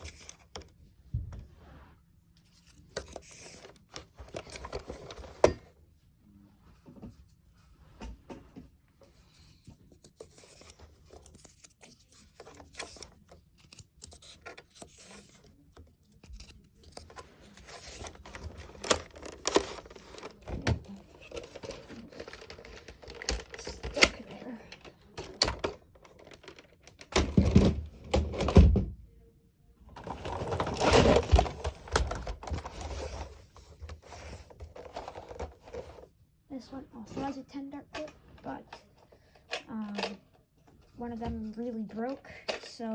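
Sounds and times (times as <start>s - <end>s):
plastic toy blasters clicking and rattling: 21.2s - 27.1s.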